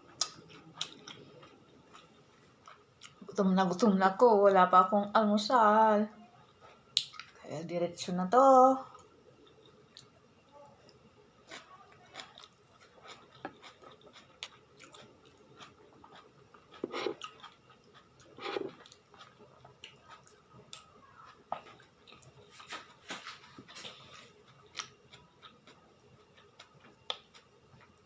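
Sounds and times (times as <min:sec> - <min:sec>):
louder low eating sounds: 0:00.0 - 0:03.3, 0:08.9 - 0:28.0
chewing and wet mouth smacks: 0:07.0 - 0:07.4, 0:23.7 - 0:28.0.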